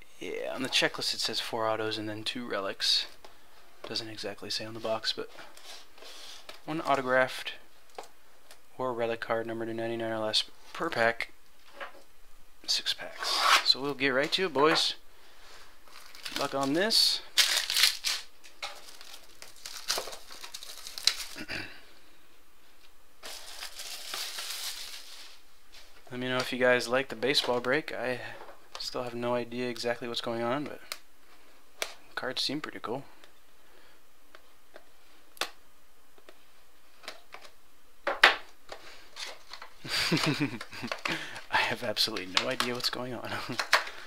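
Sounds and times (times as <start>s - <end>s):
plastic shrink wrap crinkling: 15.8s - 21.6s, 23.2s - 25.4s
rustling scrape: 23.2s - 26.0s.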